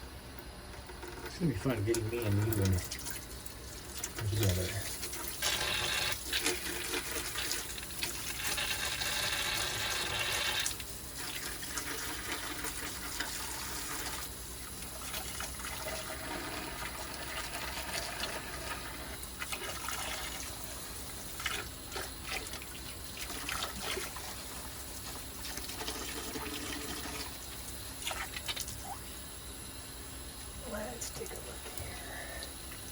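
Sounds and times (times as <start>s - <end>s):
small parts clicking while rinsed: 0.4s - 29.0s
water running from a tap: 0.8s - 32.9s.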